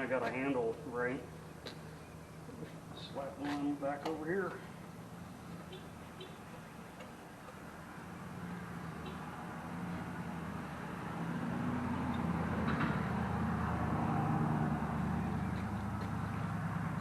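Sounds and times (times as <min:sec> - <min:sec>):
vehicle engine hum: 0:00.0 - 0:17.0.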